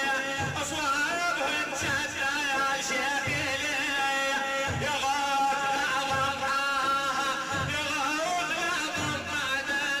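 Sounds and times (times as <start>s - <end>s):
low drum beats: 0.0s - 10.0s
man singing ornamented melody: 0.0s - 10.0s.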